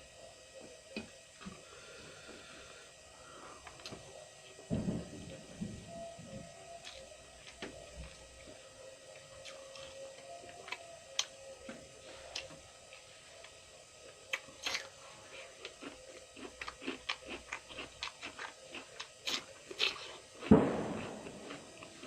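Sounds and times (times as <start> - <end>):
person chewing food: 9.4 - 10.0, 14.3 - 22.0.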